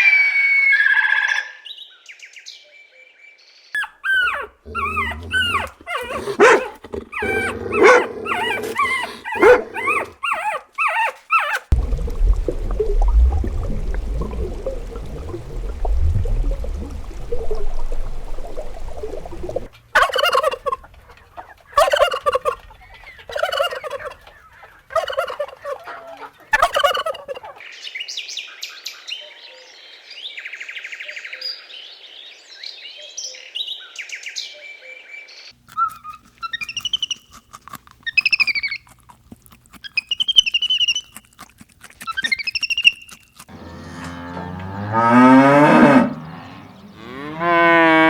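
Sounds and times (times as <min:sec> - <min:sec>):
farm animals calling loudly: 0:03.8 - 0:11.8, 0:18.6 - 0:27.6.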